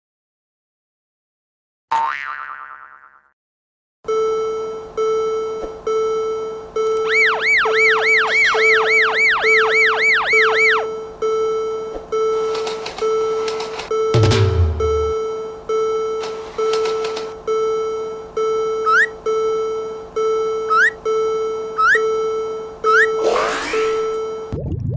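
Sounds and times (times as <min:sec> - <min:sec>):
warbling siren sweep: 0:07.0 - 0:11.0, 0:18.9 - 0:19.2, 0:21.8 - 0:22.1, 0:22.9 - 0:24.6
low thump: 0:14.2 - 0:15.2.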